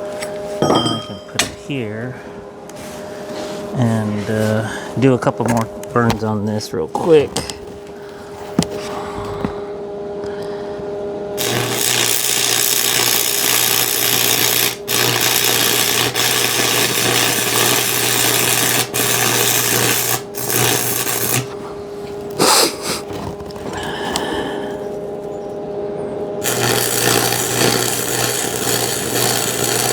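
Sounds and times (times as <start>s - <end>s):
arc welding crackling hiss: 11.4s - 21.5s, 26.4s - 29.9s.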